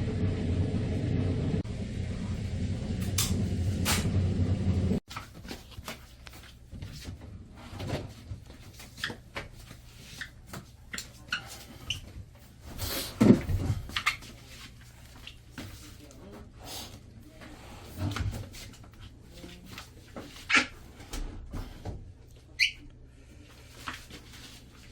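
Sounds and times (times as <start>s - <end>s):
washing machine rumbling: 0.0s - 24.9s.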